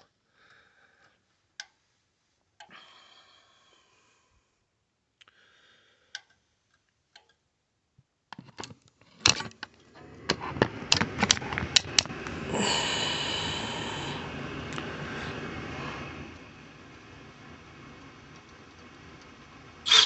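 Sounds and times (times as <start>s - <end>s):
clicks and knocks of handling: 8.3s - 12.1s
furnace inducer motor whirring: 8.6s - 20.0s.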